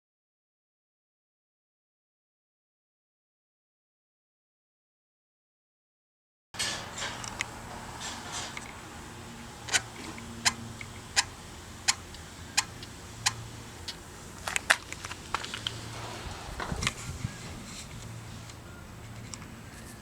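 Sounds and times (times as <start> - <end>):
bicycle rim brake clicking: 9.6 - 16.0.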